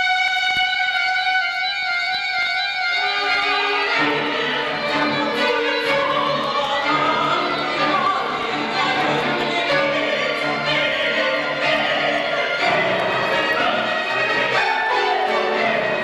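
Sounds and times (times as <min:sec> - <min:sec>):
chamber orchestra: 0:00.0 - 0:16.0
solo violin: 0:00.0 - 0:16.0
mezzo-soprano singing: 0:03.8 - 0:16.0.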